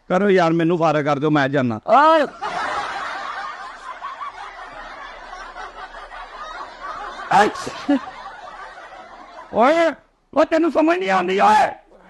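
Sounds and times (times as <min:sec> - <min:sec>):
muffled snickering laughter: 0:02.4 - 0:09.6.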